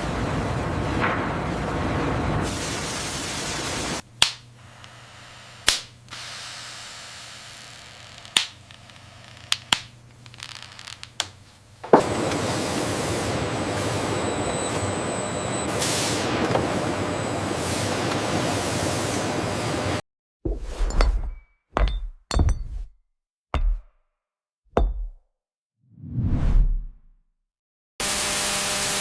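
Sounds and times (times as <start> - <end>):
factory machinery noise: 0.0 - 4.0, 11.9 - 20.0.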